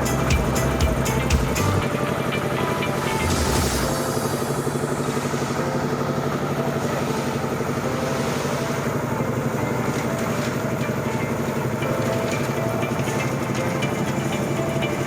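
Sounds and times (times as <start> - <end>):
machine engine throbbing steadily: 0.0 - 7.8.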